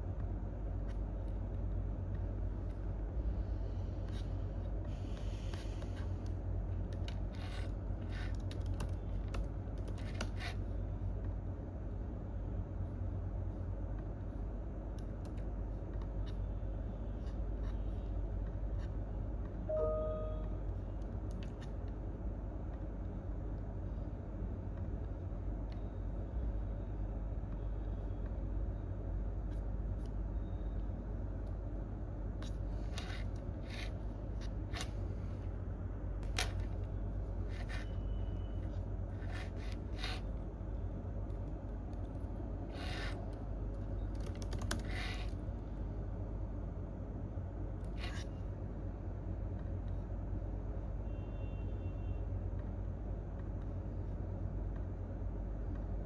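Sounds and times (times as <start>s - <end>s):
low room hum: 0.0s - 56.0s
keyboard typing and clicks: 43.3s - 45.0s.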